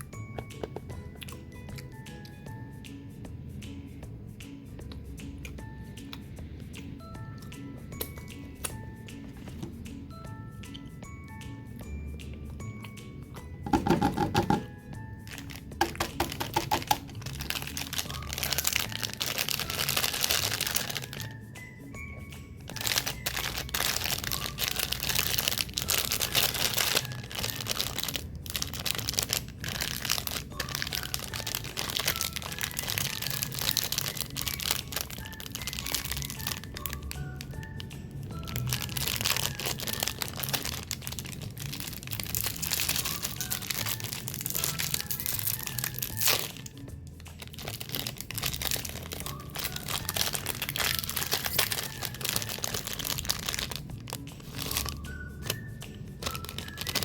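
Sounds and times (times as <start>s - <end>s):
background music: 0.0s - 57.0s
crunching cookies: 11.8s - 57.0s.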